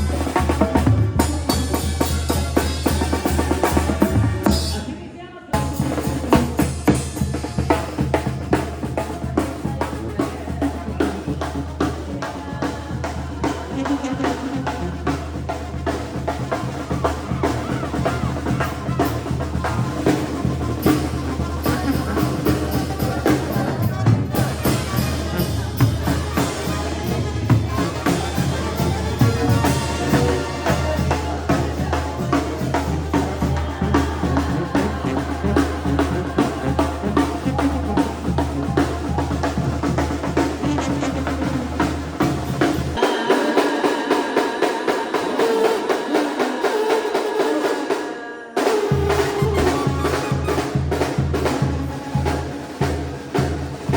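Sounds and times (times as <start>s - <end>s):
bass drum and snare beat: 0.0s - 4.8s, 5.6s - 43.0s, 49.0s - 53.9s
brass band playing: 0.0s - 53.9s.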